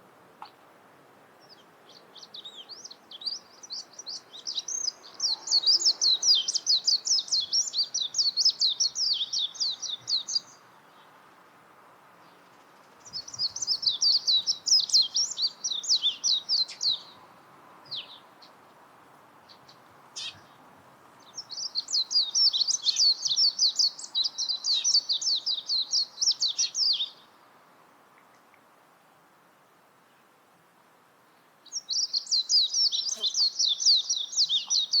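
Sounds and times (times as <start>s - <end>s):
bird twittering song: 1.4s - 11.1s, 12.2s - 18.6s, 19.4s - 20.6s, 21.2s - 27.4s, 31.6s - 35.0s.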